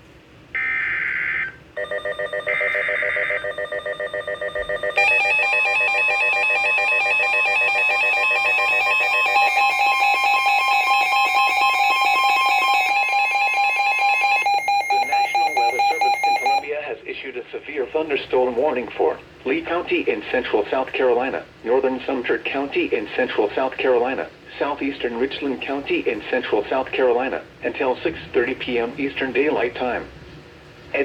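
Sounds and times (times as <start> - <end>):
rapid electronic alarm beeping: 0.6 - 16.7
steady alarm tone: 0.6 - 16.7.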